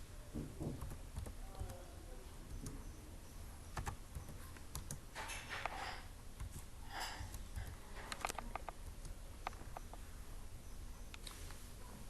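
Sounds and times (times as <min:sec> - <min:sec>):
computer keyboard typing: 0:00.6 - 0:03.0, 0:03.6 - 0:05.8, 0:06.4 - 0:10.0.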